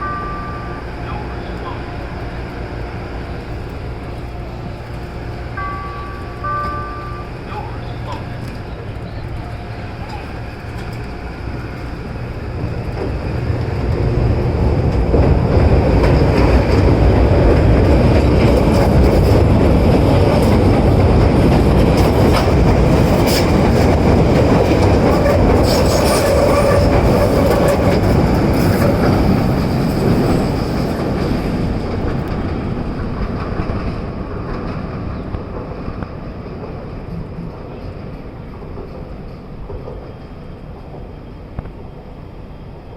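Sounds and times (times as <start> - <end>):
train running past: 0.0 - 42.9
wheels clacking over rail joints: 0.8 - 41.8
wheel squeal: 24.8 - 29.1.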